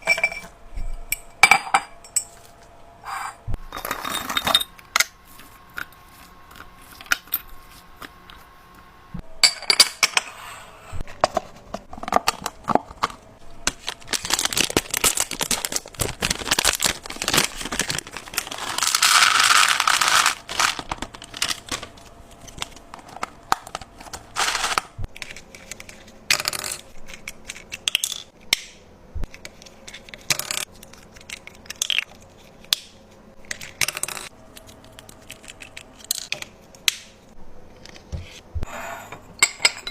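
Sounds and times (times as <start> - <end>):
plastic crinkling and tearing: 13.6 - 25.8.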